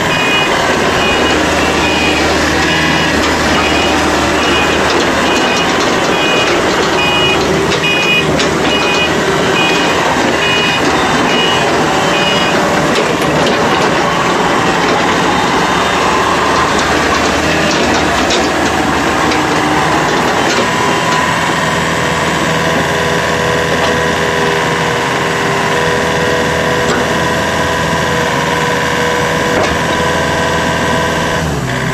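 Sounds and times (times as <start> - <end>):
two-tone travel alarm beeping: 0.0 - 21.2
steady whine: 0.0 - 25.8
excavator diesel engine and hydraulics: 0.0 - 31.9.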